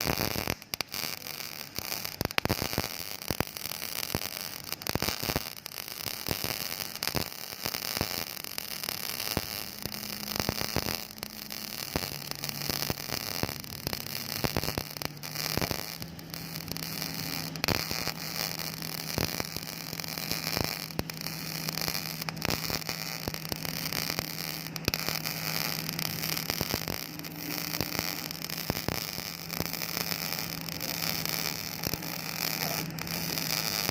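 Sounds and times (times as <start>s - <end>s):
welding arc crackling hiss: 0.0s - 33.9s
welding arc pops: 0.0s - 33.9s
low steady hum: 8.6s - 33.9s.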